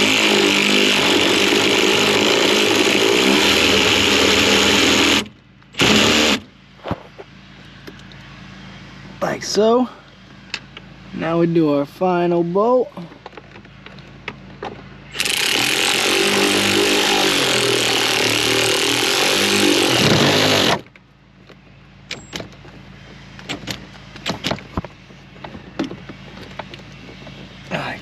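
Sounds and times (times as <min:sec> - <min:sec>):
power tool driving bolt: 0:00.0 - 0:06.5, 0:15.1 - 0:20.8.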